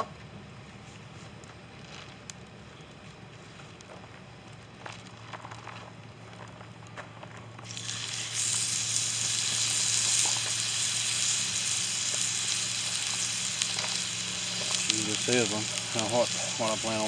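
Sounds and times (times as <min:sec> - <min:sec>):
meat sizzling in hot oil: 0:07.6 - 0:17.0.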